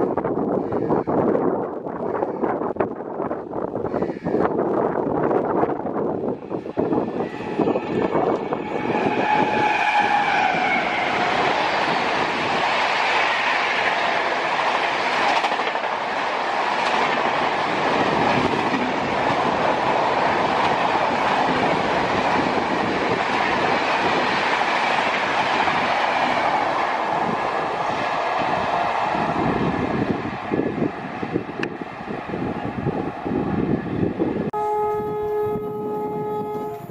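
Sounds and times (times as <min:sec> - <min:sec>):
train wheels rushing on rails: 0:04.4 - 0:34.6.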